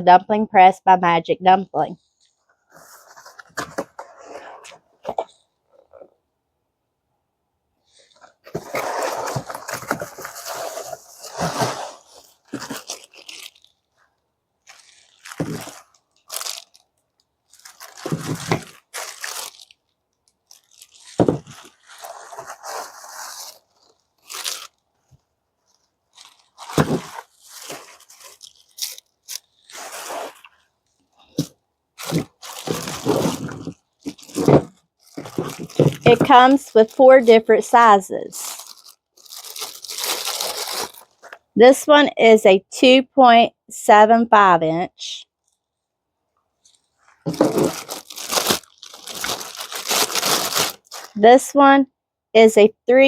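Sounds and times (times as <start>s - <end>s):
plastic wrap and cardboard crinkling: 7.9s - 41.5s, 46.6s - 51.2s
plastic pieces knocking: 31.3s - 36.4s, 47.3s - 50.7s.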